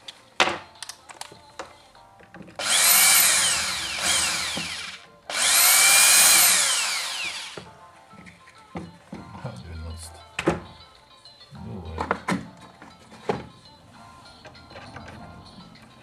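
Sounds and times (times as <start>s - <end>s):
cordless drill motor whine: 2.6s - 7.7s.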